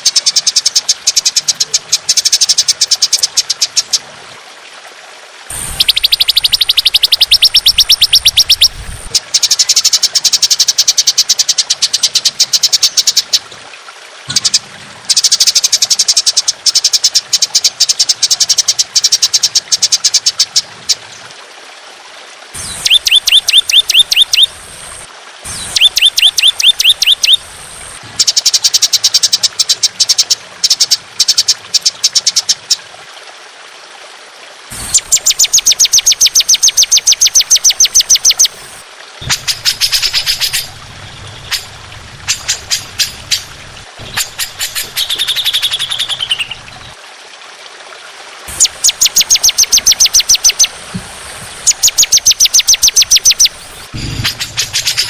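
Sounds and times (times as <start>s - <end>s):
songbird rapid trills: 5.5s - 13.4s, 22.6s - 32.8s, 34.8s - 47.0s, 48.5s - 50.8s, 51.5s - 55.0s.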